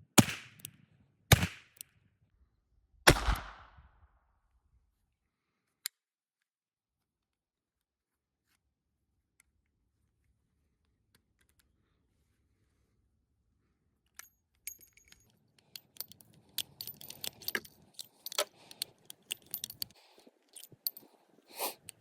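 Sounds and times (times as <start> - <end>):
revolver clicking and clinking: 14.7 - 22.0.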